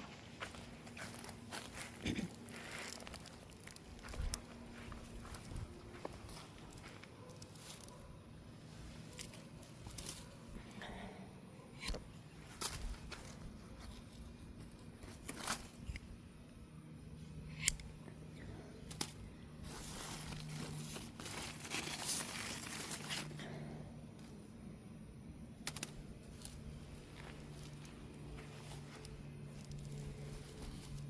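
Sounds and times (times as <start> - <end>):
rustling and crinkling: 0.0 - 10.7, 12.3 - 16.1, 18.9 - 24.4, 25.7 - 31.0
faint low hum: 0.0 - 31.0
sharp clicks: 25.6 - 26.0.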